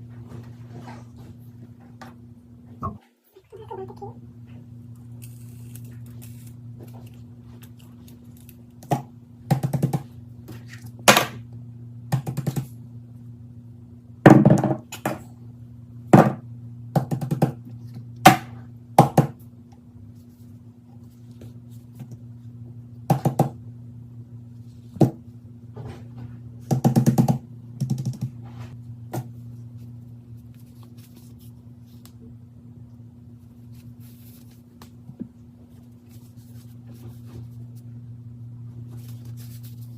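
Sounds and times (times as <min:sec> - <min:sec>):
steady low hum: 0:00.0 - 0:39.9.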